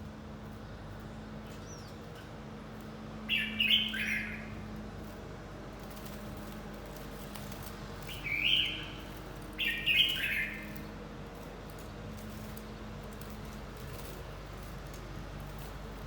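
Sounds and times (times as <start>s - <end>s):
bird singing warbling phrases: 3.3s - 4.5s, 8.1s - 9.0s, 9.6s - 10.8s.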